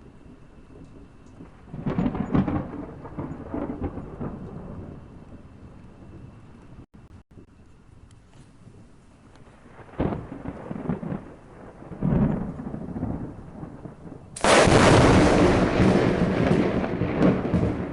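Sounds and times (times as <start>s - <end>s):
thunder rumbling: 0.0s - 7.5s, 8.6s - 17.9s
loud thunderclap: 0.3s - 6.4s, 9.7s - 17.9s.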